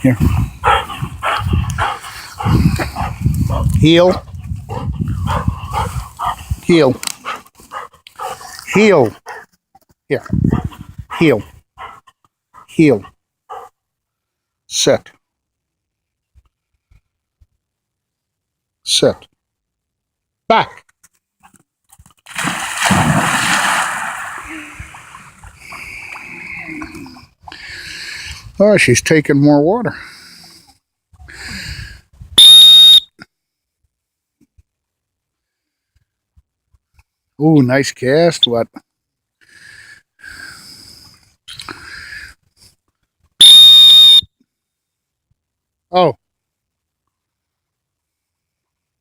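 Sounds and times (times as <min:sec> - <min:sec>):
faint breathy puffs: 0:00.2 - 0:08.7
dog splashing into water: 0:22.2 - 0:26.3
water splashing and sloshing: 0:22.2 - 0:27.0
shrill whistle blast: 0:32.4 - 0:33.1, 0:43.4 - 0:44.3.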